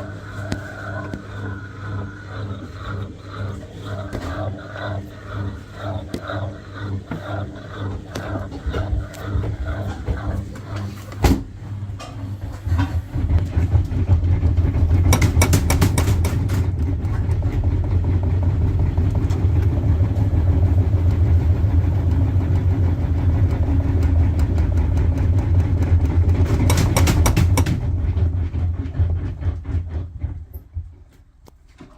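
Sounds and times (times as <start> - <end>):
washing machine drum spinning: 0.0 - 31.9
washing machine knocking: 7.9 - 31.1.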